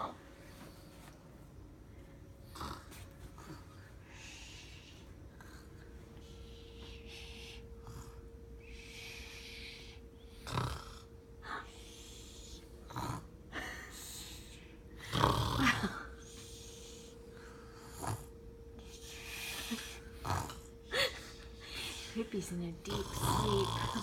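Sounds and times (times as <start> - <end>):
person snoring: 2.5 - 3.6, 6.8 - 22.2, 22.8 - 24.0.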